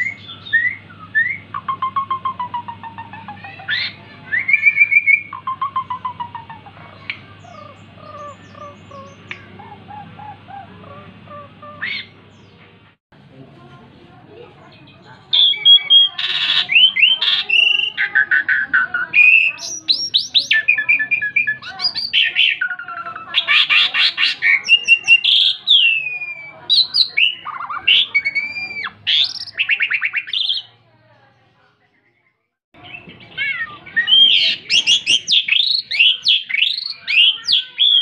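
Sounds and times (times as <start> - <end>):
starling song: 0.0 - 13.0, 14.8 - 30.8
bird rising squawk: 3.6 - 12.2.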